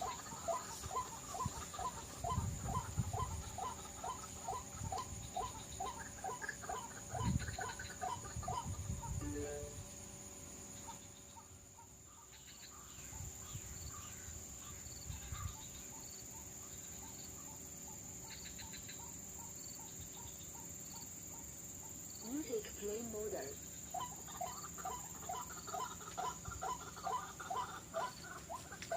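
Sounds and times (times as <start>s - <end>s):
waterhen clucking calls: 0.0s - 9.7s, 22.2s - 28.9s
insects buzzing: 0.0s - 28.9s.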